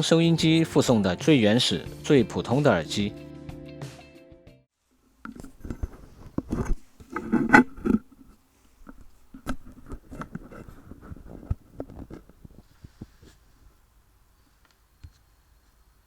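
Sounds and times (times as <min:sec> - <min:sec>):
earphone cable handling clicks: 0:05.2 - 0:12.6.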